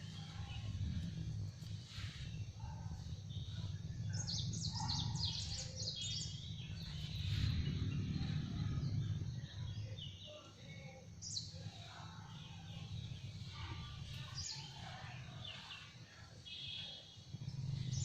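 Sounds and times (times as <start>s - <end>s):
low rumble: 0.0s - 4.8s, 6.1s - 9.9s
small birds chirping: 0.0s - 18.0s.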